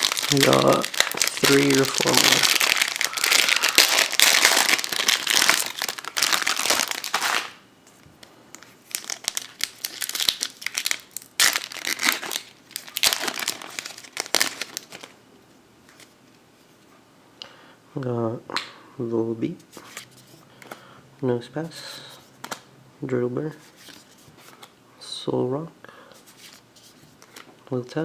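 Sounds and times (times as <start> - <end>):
foil wrapper crinkling: 0.0 - 7.6, 8.5 - 15.1.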